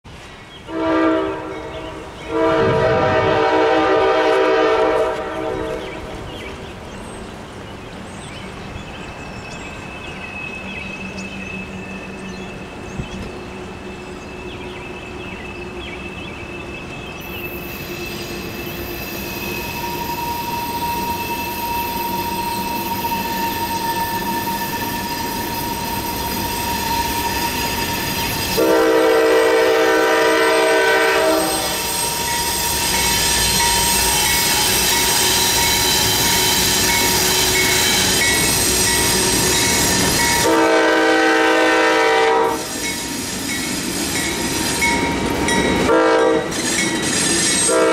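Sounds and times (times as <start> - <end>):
locomotive horn blasts: 0.7 - 5.8, 28.5 - 32.7, 40.3 - 42.7, 45.8 - 46.5, 47.7 - 47.9
train wheels squealing: 8.2 - 40.9, 42.0 - 47.9.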